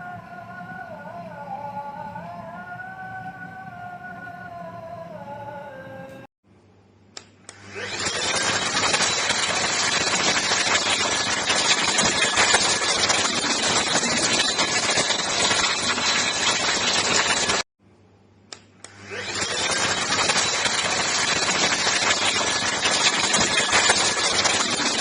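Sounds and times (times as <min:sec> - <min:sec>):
clicks: 0:07.1 - 0:11.0, 0:18.5 - 0:24.7
vacuum cleaner motor whine: 0:07.5 - 0:17.6, 0:18.9 - 0:25.0.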